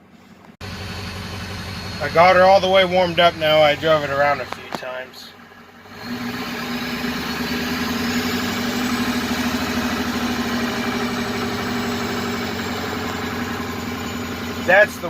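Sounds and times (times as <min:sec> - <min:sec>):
truck engine misfiring: 0:00.0 - 0:15.0.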